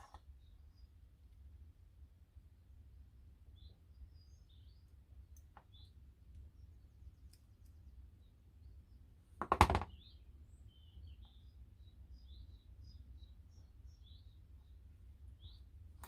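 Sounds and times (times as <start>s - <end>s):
birds chirping faintly: 0.0s - 16.0s
low steady hum: 0.0s - 16.0s
loud knock: 9.4s - 9.9s.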